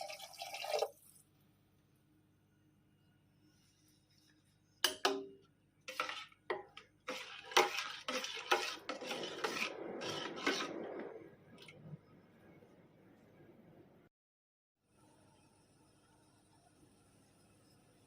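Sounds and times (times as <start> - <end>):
spoon stirring and scraping pot: 3.6 - 11.8.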